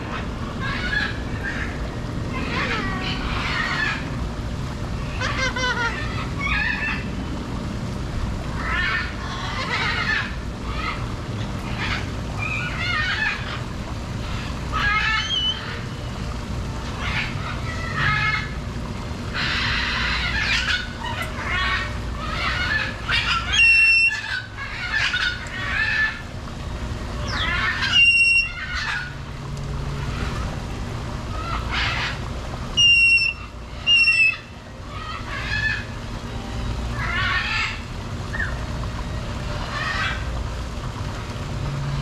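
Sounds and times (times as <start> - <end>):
steady low hum: 0.0 - 42.0
parrots squawking: 0.1 - 4.2, 5.0 - 7.1, 8.6 - 11.0, 11.7 - 13.6, 14.2 - 15.9, 17.0 - 18.6, 19.3 - 26.3, 27.2 - 29.2, 31.3 - 32.2, 32.8 - 36.0, 36.9 - 38.6, 39.5 - 40.3
shrill whistled calls: 15.0 - 15.7, 23.1 - 25.3, 27.2 - 29.0, 32.8 - 34.5.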